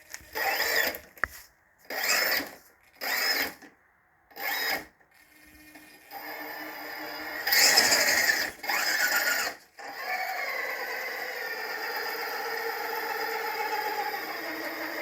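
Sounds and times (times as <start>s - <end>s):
electric motor whining: 0.2s - 1.0s, 1.9s - 3.6s, 4.4s - 15.0s.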